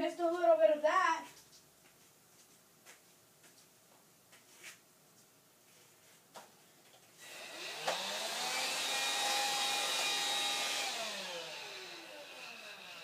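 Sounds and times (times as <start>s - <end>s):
vacuum cleaner motor whine: 7.2s - 13.0s.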